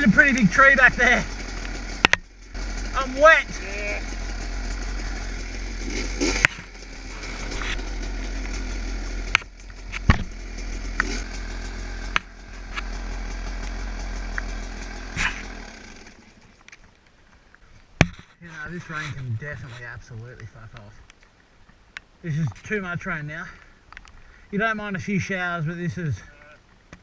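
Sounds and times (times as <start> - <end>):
dirt bike engine running: 0.0 - 16.6.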